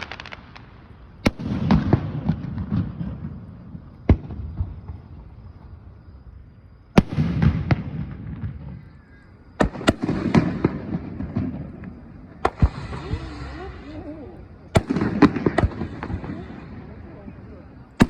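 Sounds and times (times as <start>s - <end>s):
fireworks shells bursting: 0.0s - 3.0s.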